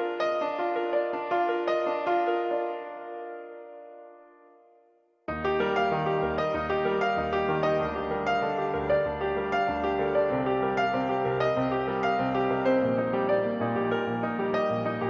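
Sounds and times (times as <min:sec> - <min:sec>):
slow piano music: 0:00.0 - 0:15.0.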